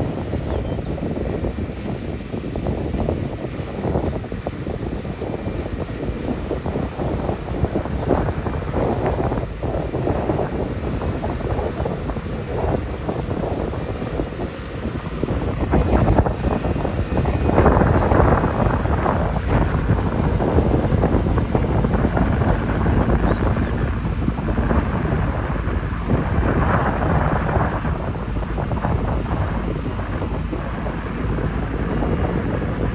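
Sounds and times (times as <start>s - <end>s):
low rumble: 0.0s - 32.9s
wind buffeting microphone: 0.0s - 32.9s.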